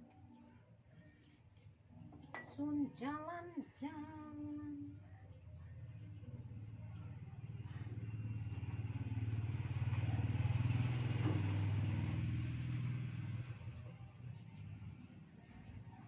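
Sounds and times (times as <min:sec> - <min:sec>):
vehicle engine passing by: 0:05.8 - 0:16.0.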